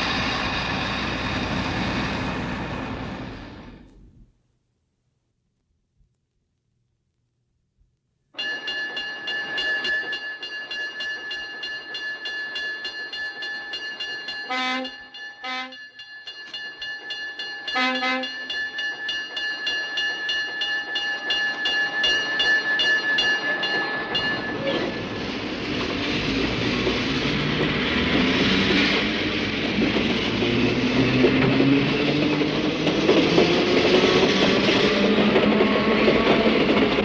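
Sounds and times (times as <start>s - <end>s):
locomotive bell ringing: 8.4s - 25.9s.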